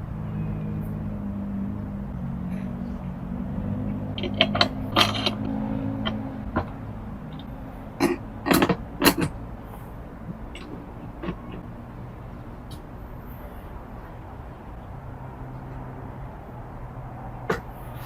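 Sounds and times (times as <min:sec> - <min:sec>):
low engine-like drone: 0:00.0 - 0:18.0
sharp clacks and pops: 0:03.9 - 0:09.4, 0:10.3 - 0:11.7, 0:17.5 - 0:17.7.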